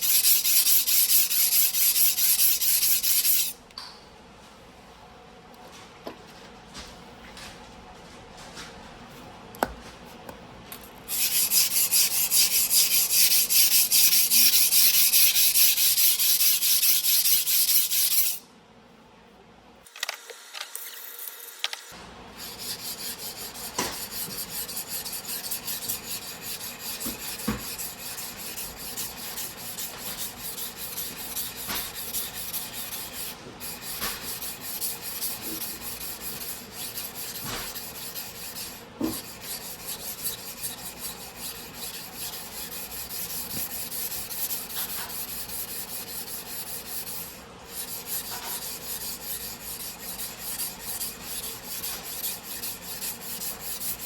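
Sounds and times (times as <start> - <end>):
knife scraping on whetstone: 0.0 - 3.6, 11.1 - 18.4, 22.4 - 54.0.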